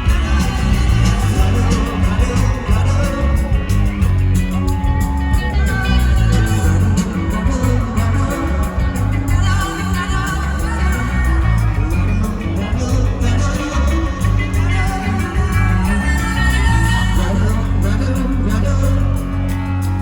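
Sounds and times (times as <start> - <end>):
live rock band playing: 0.0 - 20.0
person singing: 0.0 - 20.0.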